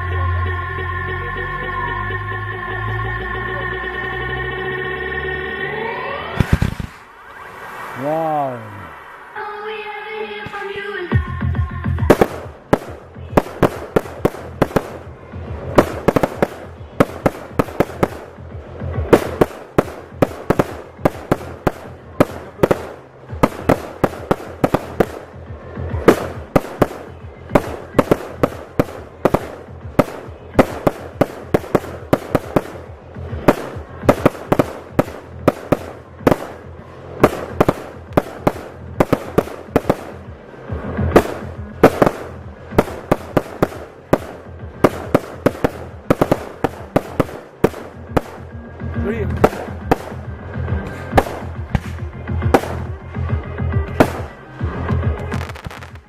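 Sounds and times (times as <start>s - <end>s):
electronic dance music: 0.0s - 6.4s
fireworks bangs and pops: 6.4s - 7.1s, 11.9s - 56.0s.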